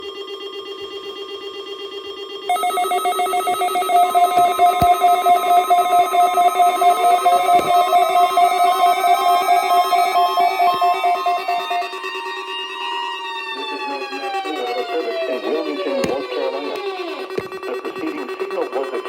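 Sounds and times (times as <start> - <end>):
higher-pitched alert layer: 2.5 - 12.0
tone sliding upward: 2.5 - 12.3
pulsing ringing alert tone: 2.5 - 15.9.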